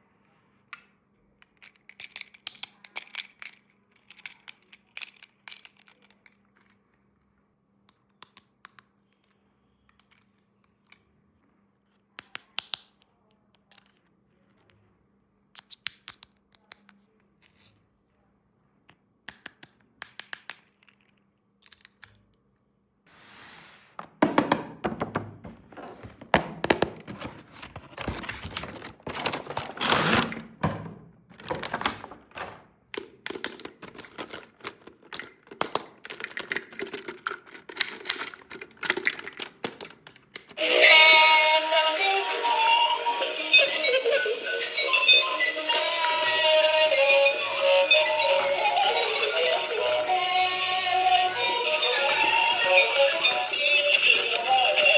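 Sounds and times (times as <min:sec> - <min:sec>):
plastic toy pieces clicking: 0:01.4 - 0:06.8, 0:12.2 - 0:13.0, 0:15.5 - 0:17.7, 0:19.3 - 0:22.2, 0:32.9 - 0:40.6
packaging rustling: 0:25.6 - 0:32.6.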